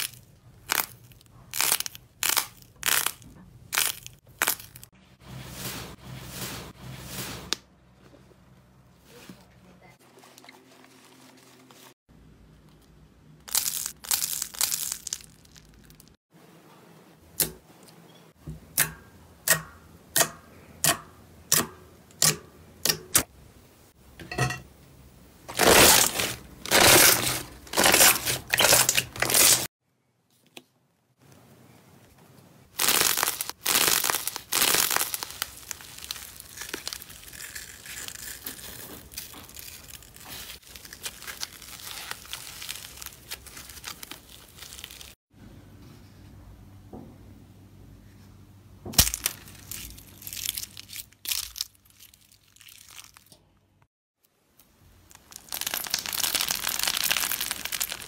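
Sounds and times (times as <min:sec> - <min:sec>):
slime crackling and crinkling: 0:00.0 - 0:04.9, 0:13.4 - 0:16.2, 0:25.5 - 0:29.7, 0:32.7 - 0:45.2, 0:49.0 - 0:53.4, 0:55.1 - 0:58.0
slime popping: 0:55.2 - 0:58.0.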